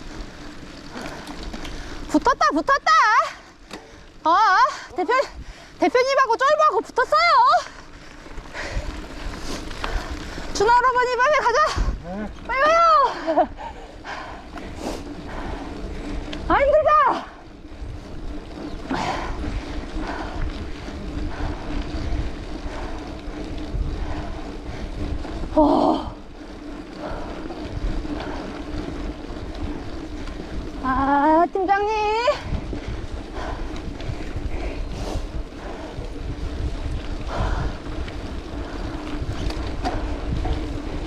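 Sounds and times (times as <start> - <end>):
bike clicks and rattles: 0.0 - 41.0
bike tyres rolling on dirt: 0.0 - 41.0
wind rumbling on microphone: 0.0 - 41.0
person breathing hard: 7.9 - 10.5, 13.1 - 16.3, 18.9 - 26.4, 32.4 - 39.1.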